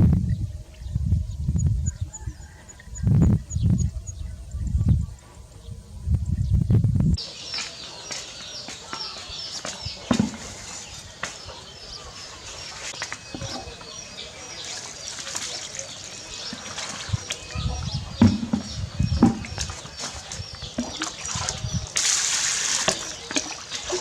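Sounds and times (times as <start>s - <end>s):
small birds chirping: 0.1s - 24.0s
loud thump: 18.2s - 19.6s.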